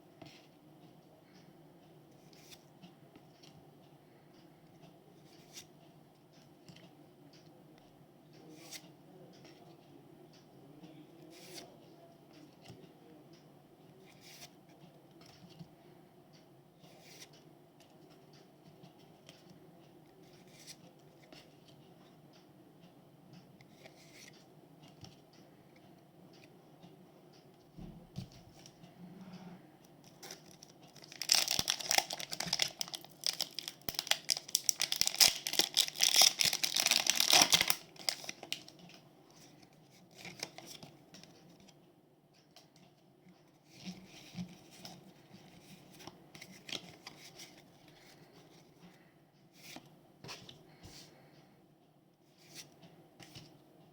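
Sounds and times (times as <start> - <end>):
foil wrapper tearing and crinkling: 31.0 - 38.5.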